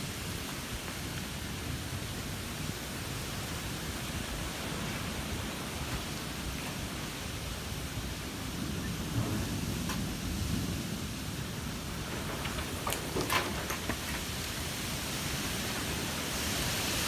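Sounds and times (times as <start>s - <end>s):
wind blowing: 11.4s - 17.0s.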